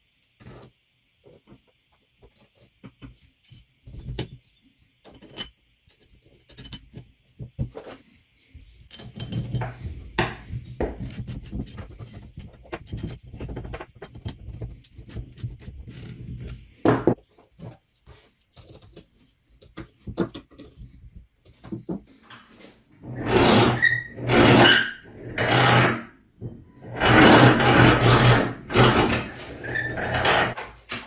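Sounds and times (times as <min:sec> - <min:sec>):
scraping and rubbing on grinder: 0:22.5 - 0:26.1, 0:26.8 - 0:30.6.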